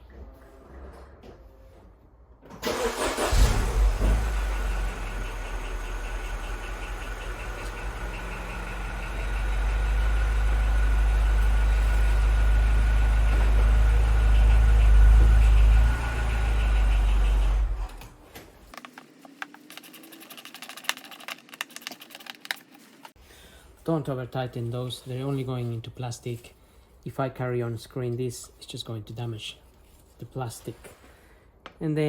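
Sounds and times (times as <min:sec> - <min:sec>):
car engine idling: 0:02.8 - 0:17.9.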